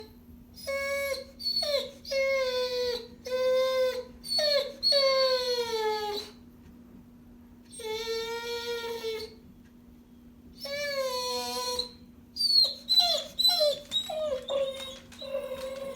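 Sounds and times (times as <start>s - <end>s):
dog crying high-pitched: 0.6s - 6.4s, 7.7s - 9.4s, 10.6s - 15.9s.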